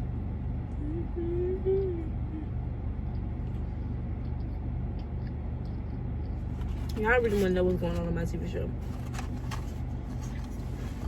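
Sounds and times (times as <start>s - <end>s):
person humming: 0.8s - 2.6s.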